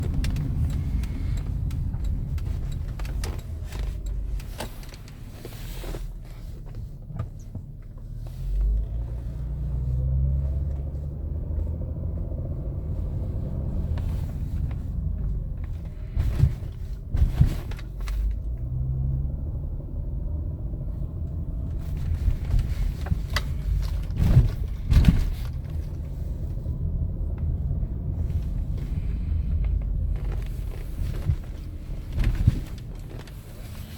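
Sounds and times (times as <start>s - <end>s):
engine rattle: 0.0s - 33.9s
car engine revving: 8.2s - 17.3s.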